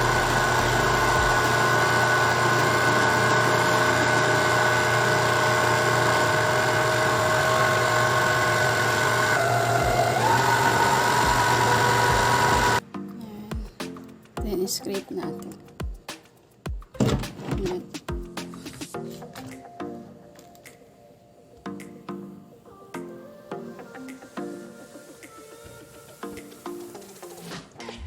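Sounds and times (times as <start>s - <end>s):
electric stand mixer whirring: 0.0s - 12.8s.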